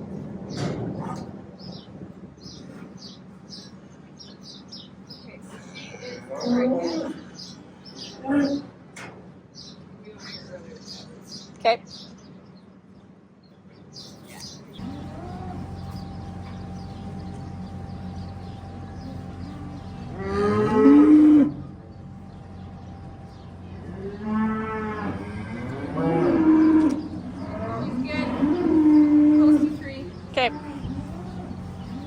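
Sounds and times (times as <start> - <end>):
cows mooing: 5.8 - 7.3, 14.8 - 32.0
steady low hum: 14.6 - 32.0.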